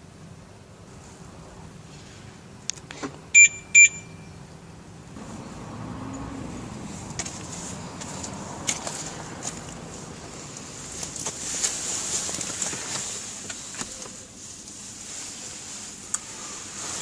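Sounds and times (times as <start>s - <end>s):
low steady rumble: 0.0s - 17.0s
short electronic beeps: 3.4s - 4.4s.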